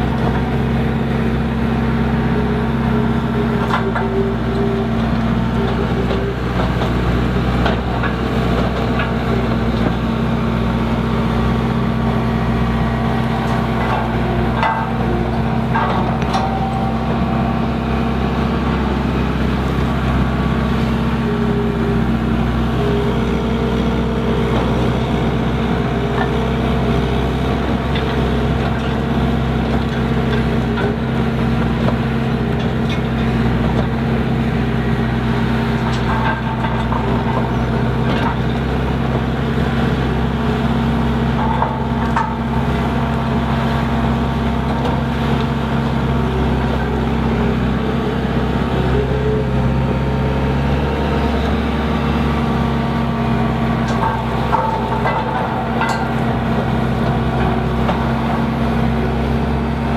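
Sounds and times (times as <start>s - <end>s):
engine running under load: 0.0s - 59.9s.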